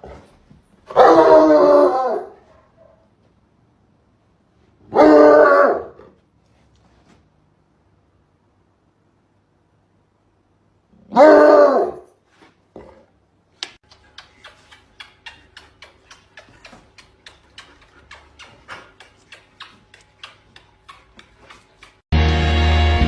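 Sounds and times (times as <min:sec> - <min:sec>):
music: 0:22.2 - 0:23.0.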